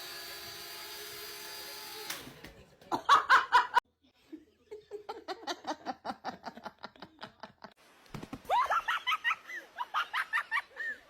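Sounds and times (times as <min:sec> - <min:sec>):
person laughing: 0:08.5 - 0:11.0.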